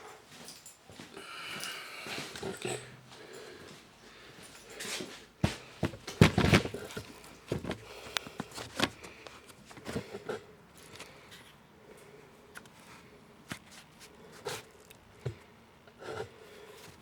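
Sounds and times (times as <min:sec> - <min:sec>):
clicks and knocks of handling: 0:05.4 - 0:11.1.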